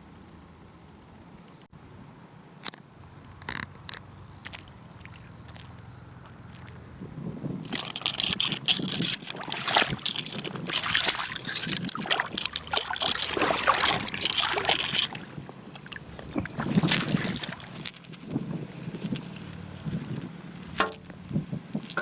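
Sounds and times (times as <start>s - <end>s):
shallow water sloshing and splashing: 7.6s - 21.0s.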